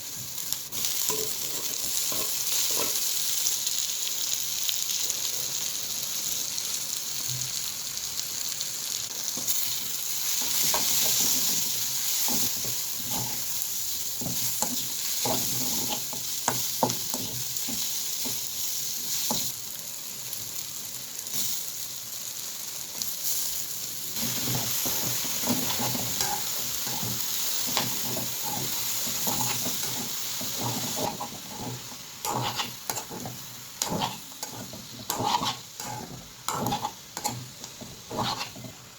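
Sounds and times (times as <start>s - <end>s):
vegetables sizzling in oil: 0.0s - 38.9s
spatula scraping pan: 0.8s - 3.1s, 10.3s - 13.6s, 14.2s - 18.4s, 24.2s - 38.9s.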